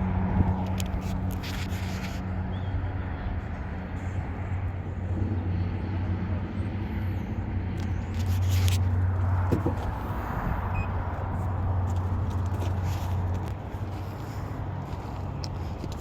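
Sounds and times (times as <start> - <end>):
outdoor background noise: 0.0 - 16.0
rustling noise: 0.6 - 2.3, 8.1 - 10.3, 11.4 - 16.0.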